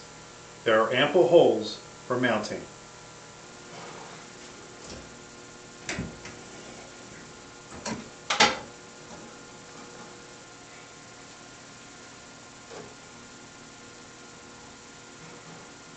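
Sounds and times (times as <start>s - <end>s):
steady low hum: 0.0s - 15.9s.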